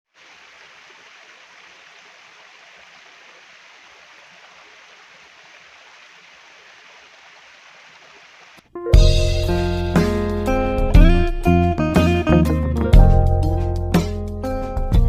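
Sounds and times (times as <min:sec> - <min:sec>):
stream rushing: 0:00.1 - 0:08.6.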